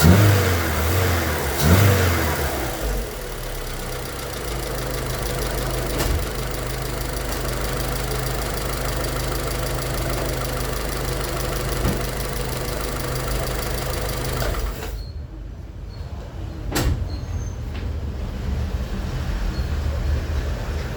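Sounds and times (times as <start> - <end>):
car engine running with knock: 0.0 - 15.0.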